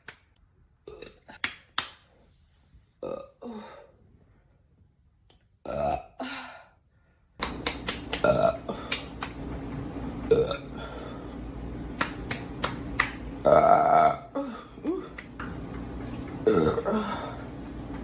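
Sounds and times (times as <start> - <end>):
woman burping: 0.8 - 1.3, 5.6 - 6.4, 8.3 - 8.9, 13.4 - 15.2, 16.4 - 17.3.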